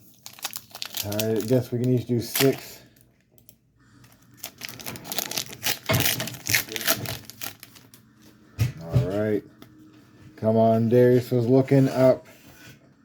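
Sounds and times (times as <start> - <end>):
foil wrapper tearing and crinkling: 0.0 - 3.1, 4.0 - 8.0.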